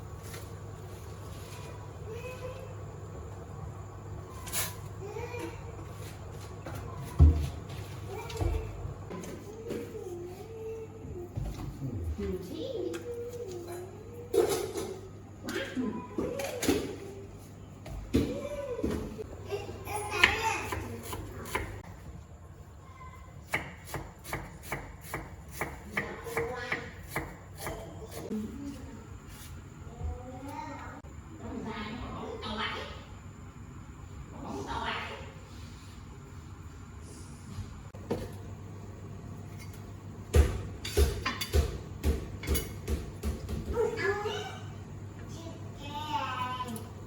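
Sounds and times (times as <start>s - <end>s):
knife chopping on cutting board: 23.5s - 28.2s.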